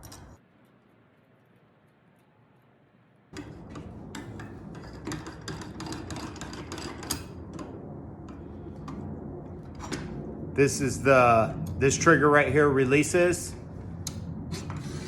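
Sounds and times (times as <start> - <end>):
metal parts clicking and knocking: 0.0 - 0.4, 3.4 - 7.6
low steady rumble: 2.9 - 15.0.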